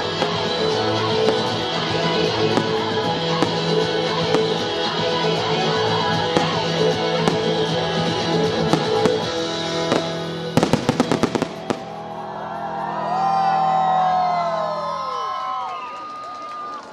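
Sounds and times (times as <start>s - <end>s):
fireworks bangs and cracks: 0.0s - 5.0s, 6.0s - 12.1s
background music: 0.0s - 16.0s.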